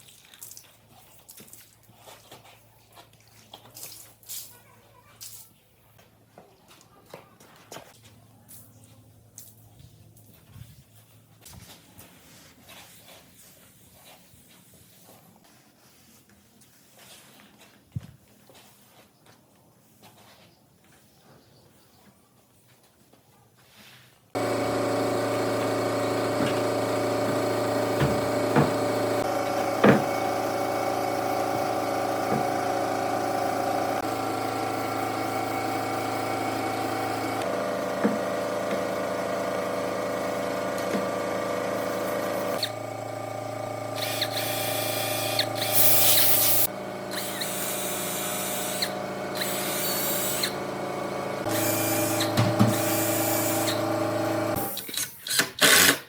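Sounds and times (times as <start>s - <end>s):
power tool motor running: 24.4s - 56.0s
high hissing bursts: 44.0s - 50.6s.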